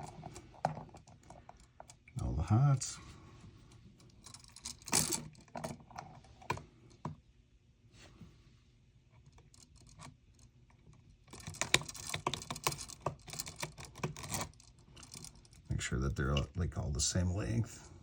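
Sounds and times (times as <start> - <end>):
clicking and scratching of wires: 9.2 - 16.4.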